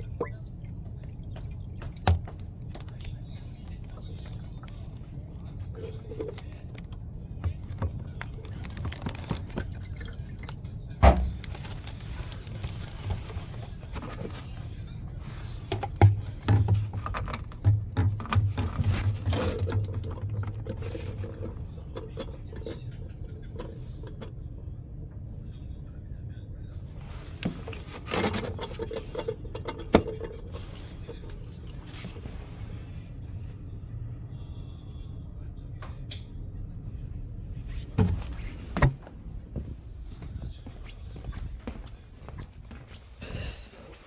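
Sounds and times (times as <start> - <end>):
water trickling and dripping: 0.0 - 2.4.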